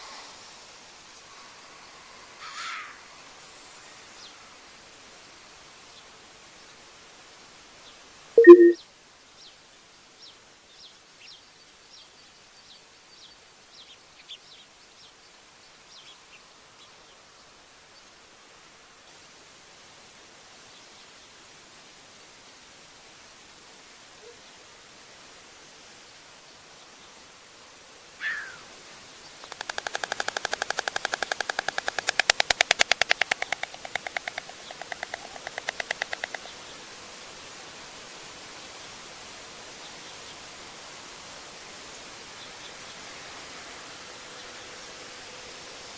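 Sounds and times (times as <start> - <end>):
small birds chirping: 29.3 - 36.8
stork bill-clattering: 29.5 - 36.5.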